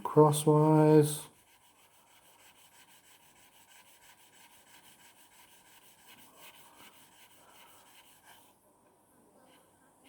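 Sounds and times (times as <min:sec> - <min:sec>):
blade scraping on sandpaper: 0:01.4 - 0:08.4.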